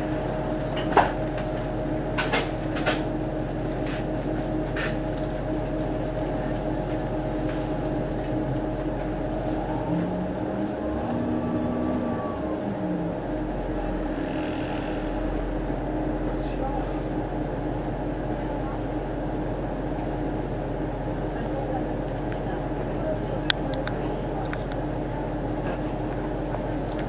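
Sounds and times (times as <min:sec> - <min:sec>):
bus drivetrain humming: 0:00.0 - 0:27.0
whining tone: 0:08.2 - 0:16.2.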